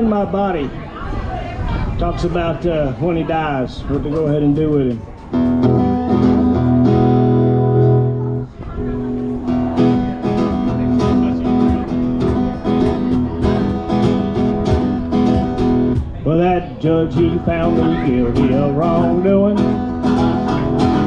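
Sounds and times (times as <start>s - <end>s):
guitar strumming chords: 5.3s - 21.0s.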